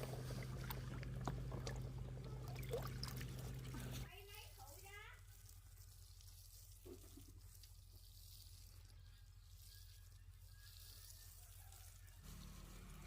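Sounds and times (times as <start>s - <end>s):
steady low hum: 0.0s - 4.1s.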